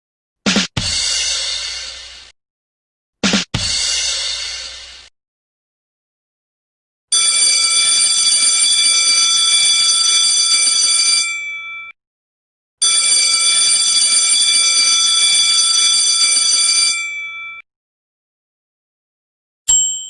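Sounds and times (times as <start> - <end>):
electric alarm bell ringing: 7.1 - 12.0, 12.8 - 17.7, 19.7 - 20.0.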